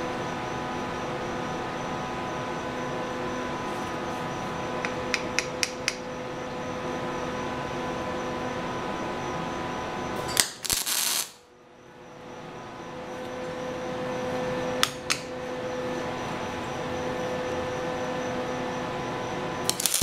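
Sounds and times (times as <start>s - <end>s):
machine humming: 0.0s - 20.0s.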